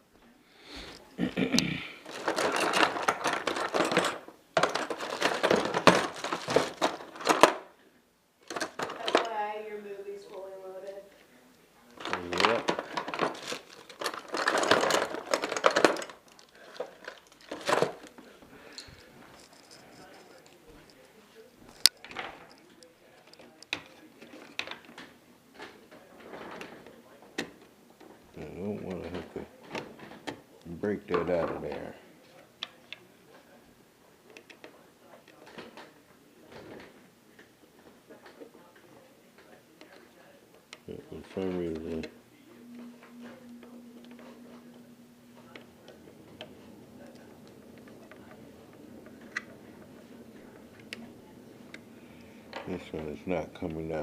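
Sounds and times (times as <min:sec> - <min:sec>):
plastic crinkling and rustling: 0:02.0 - 0:07.7, 0:08.4 - 0:09.5, 0:12.0 - 0:21.1
plastic parts clicking: 0:02.0 - 0:07.7, 0:08.4 - 0:09.4, 0:11.9 - 0:18.2.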